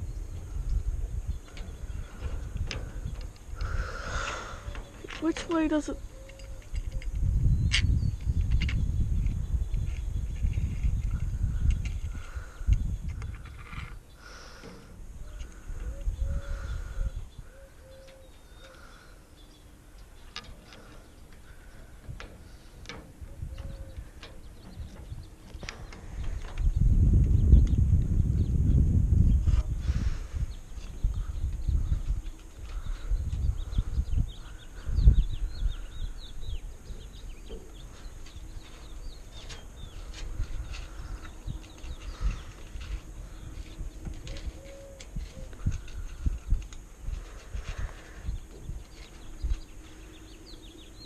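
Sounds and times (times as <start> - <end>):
small birds chirping: 0.0 - 51.0
low thumps and rumble: 21.4 - 50.8.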